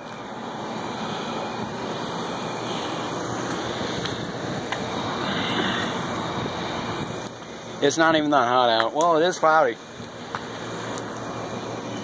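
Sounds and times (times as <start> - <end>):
wind rushing across microphone: 3.7 - 7.3.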